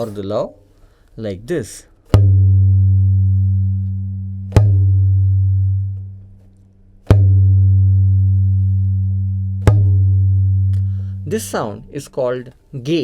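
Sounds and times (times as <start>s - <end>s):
tabla bass drum booms: 2.1s - 12.1s.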